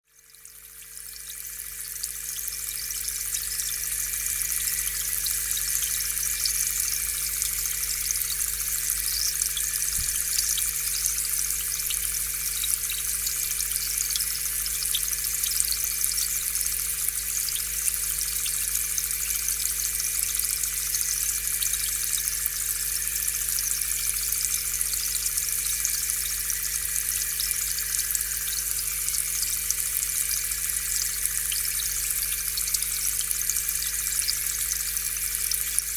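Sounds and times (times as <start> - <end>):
air pump electric hum: 1.8 - 15.0.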